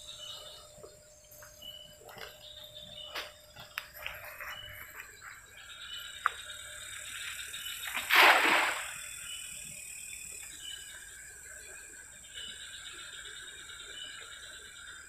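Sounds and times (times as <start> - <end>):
cast net splashing on water: 7.8 - 9.1.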